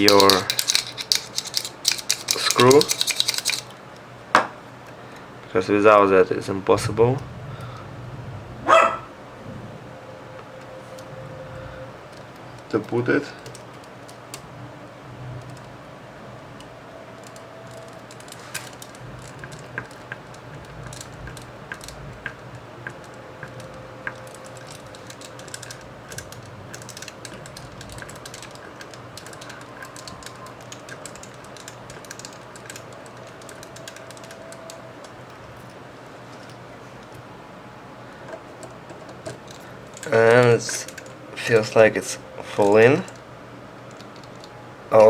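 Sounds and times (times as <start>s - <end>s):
screwdriver clicks: 0.0s - 3.7s
steady low hum: 0.0s - 45.0s.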